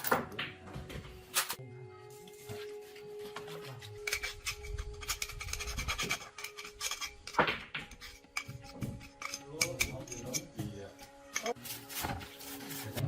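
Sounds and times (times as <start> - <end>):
metal parts and tools clinking: 0.0 - 0.2, 3.8 - 12.2.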